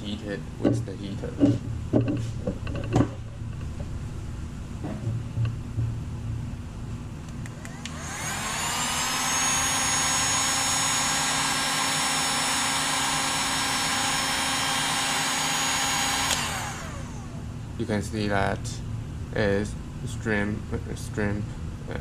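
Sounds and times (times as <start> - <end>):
heat gun fan whine: 7.0 - 21.4.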